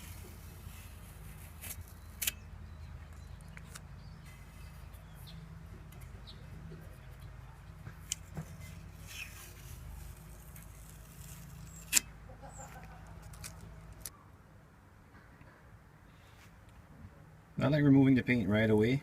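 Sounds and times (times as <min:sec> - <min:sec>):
tape peeling crackles and tearing: 0:00.0 - 0:02.5, 0:08.0 - 0:14.1.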